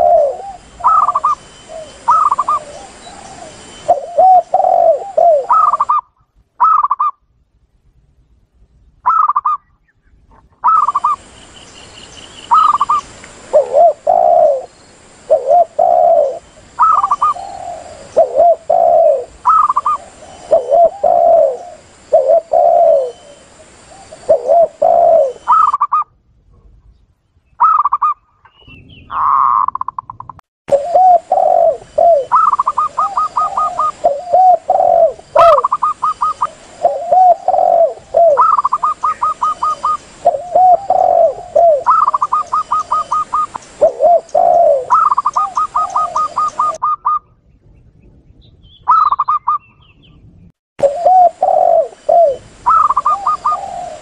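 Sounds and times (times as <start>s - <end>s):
doves cooing: 0.0s - 6.0s, 10.6s - 11.2s, 12.4s - 26.0s, 29.1s - 47.3s, 50.8s - 54.0s.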